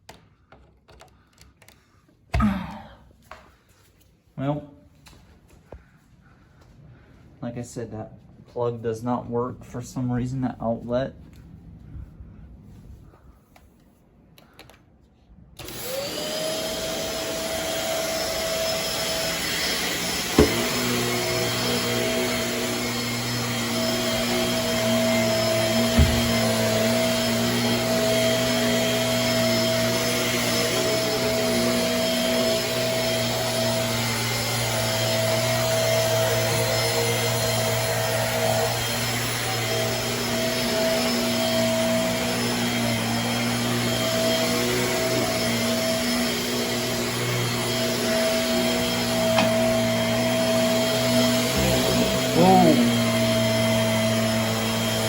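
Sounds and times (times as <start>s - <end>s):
vacuum cleaner running: 15.6s - 55.0s
knock: 20.4s - 20.6s, 26.0s - 26.3s.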